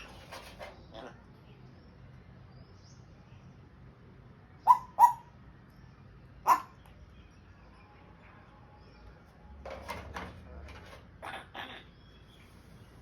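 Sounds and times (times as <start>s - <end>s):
parrot giving sharp calls: 4.6s - 5.3s.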